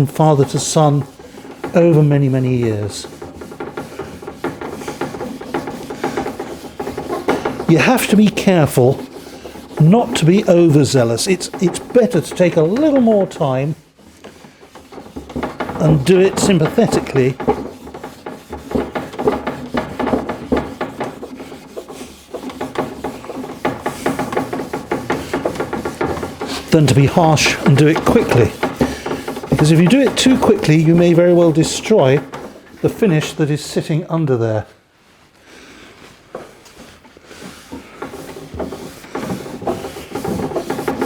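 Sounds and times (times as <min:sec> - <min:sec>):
wire wool rubbing on wood: 0:00.0 - 0:41.0.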